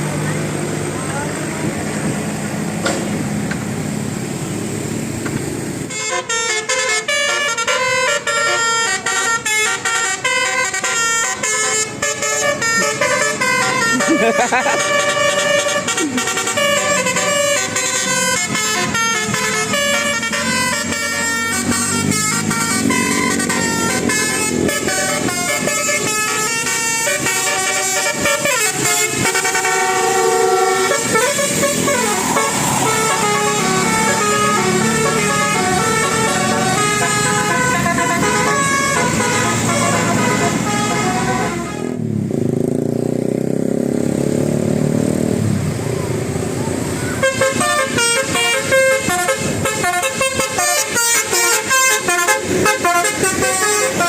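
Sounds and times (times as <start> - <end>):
musical air horn tune: 5.9 - 42.1, 47.2 - 54.0.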